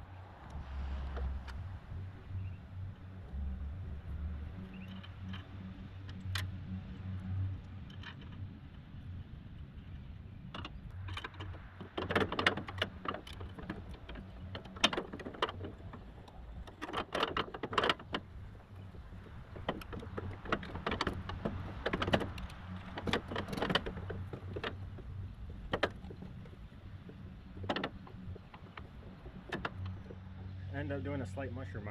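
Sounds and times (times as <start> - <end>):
steady low hum: 0.0 - 11.9
metal clicks and rattles: 9.8 - 31.2.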